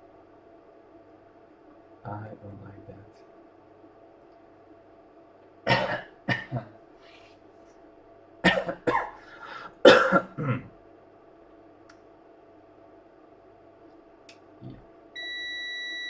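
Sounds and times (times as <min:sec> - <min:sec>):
faint steady hum: 0:00.0 - 0:16.0
man coughing: 0:05.7 - 0:06.7, 0:08.4 - 0:10.7.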